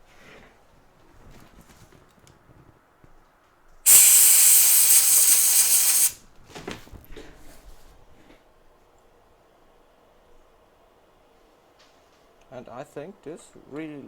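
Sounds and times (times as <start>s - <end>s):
spray can hissing: 3.9s - 6.2s.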